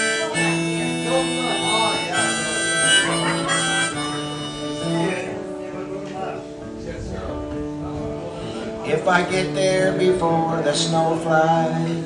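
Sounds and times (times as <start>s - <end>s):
harmonica playing: 0.0s - 5.6s
strummed acoustic guitar: 0.0s - 12.0s.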